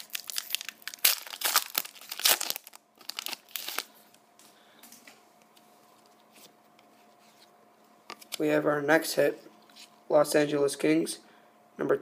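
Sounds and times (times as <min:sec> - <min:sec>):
card pack wrapper tearing: 0:00.0 - 0:03.9.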